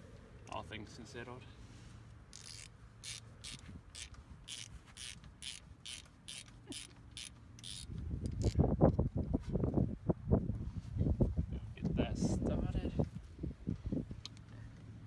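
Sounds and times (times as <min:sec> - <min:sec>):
ratchet wrench clicking: 0:02.3 - 0:08.6
wind buffeting microphone: 0:07.9 - 0:14.2.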